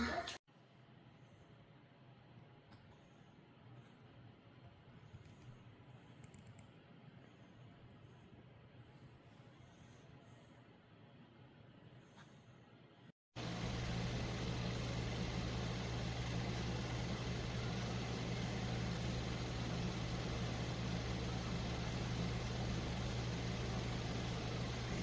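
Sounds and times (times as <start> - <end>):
machine hum with fan-like hiss: 13.4 - 25.0.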